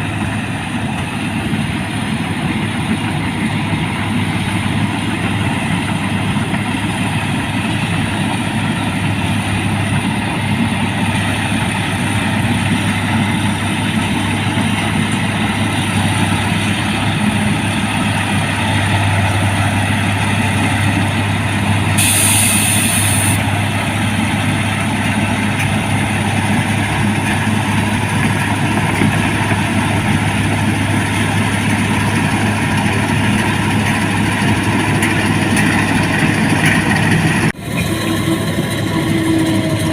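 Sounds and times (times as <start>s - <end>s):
combine harvester running: 0.0s - 39.9s
short high hiss: 22.0s - 23.4s.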